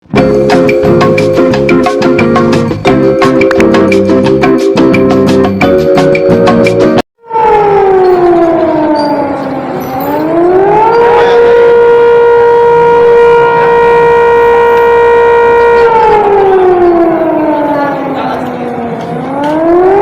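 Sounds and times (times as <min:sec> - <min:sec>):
siren rising and falling: 0:06.4 - 0:20.0.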